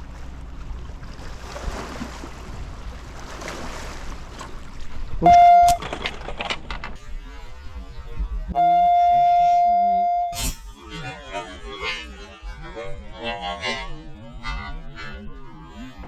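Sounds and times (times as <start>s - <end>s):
water washing along shore: 0.0s - 7.8s
loud beep-like tone: 5.2s - 5.8s, 8.5s - 10.8s.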